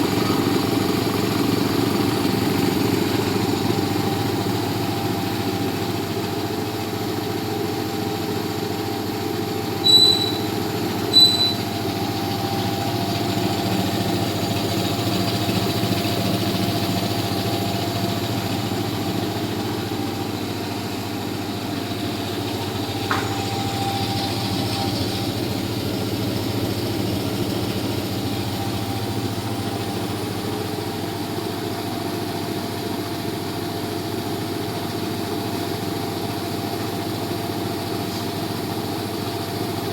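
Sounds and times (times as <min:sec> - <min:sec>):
air compressor running: 0:00.0 - 0:39.9
short high beeps: 0:09.8 - 0:10.5, 0:11.1 - 0:11.6.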